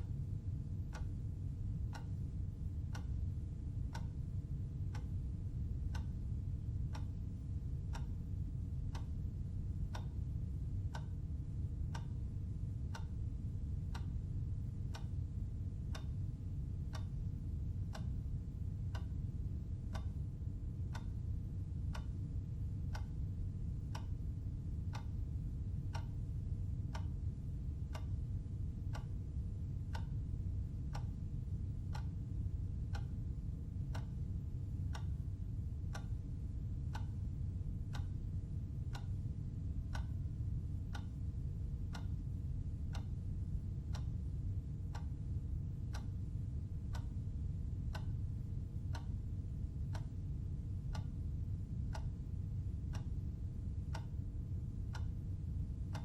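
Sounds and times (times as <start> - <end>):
clock ticking: 1.8 - 9.2, 9.8 - 11.2, 13.8 - 21.2, 21.8 - 24.2, 24.8 - 26.3, 26.9 - 28.2, 28.9 - 29.2, 29.9 - 32.2, 32.9 - 34.3, 34.9 - 35.2, 35.9 - 37.2, 37.9 - 39.3, 39.9 - 42.3, 42.9 - 43.1, 43.7 - 46.2, 46.9 - 51.3, 51.9 - 54.3, 54.9 - 55.2.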